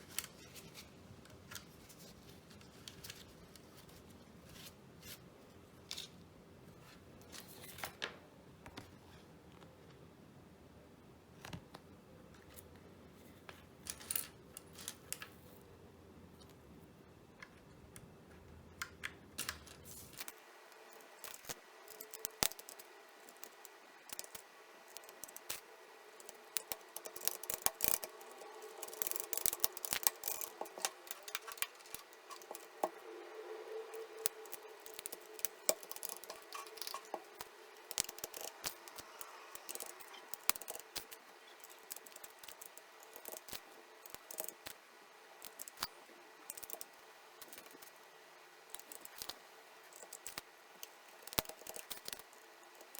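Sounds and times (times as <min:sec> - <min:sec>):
plastic keyboard parts clicking: 0:18.8 - 0:33.1, 0:33.9 - 0:44.8, 0:45.4 - 0:45.9, 0:46.5 - 0:48.0, 0:48.7 - 0:52.9.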